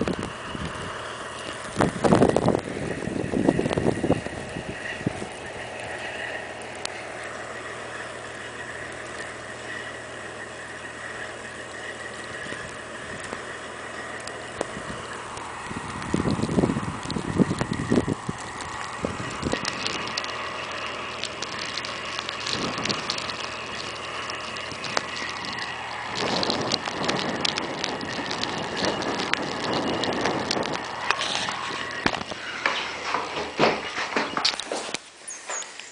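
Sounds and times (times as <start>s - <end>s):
wind gusting on microphone: 0.0s - 35.0s
crackling hiss with ticks: 0.0s - 35.9s.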